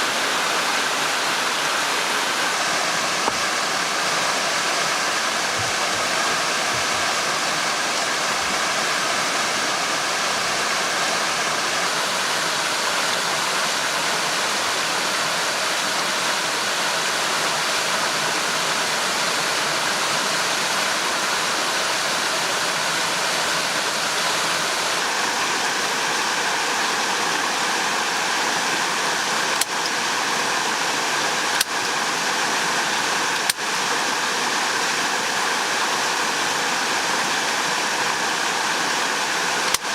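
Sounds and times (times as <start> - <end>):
rushing flowing water: 0.0 - 39.9.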